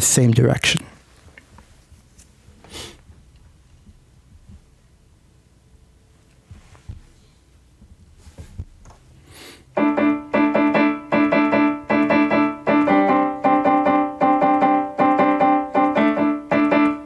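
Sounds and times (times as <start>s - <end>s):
piano chords: 9.8s - 17.0s.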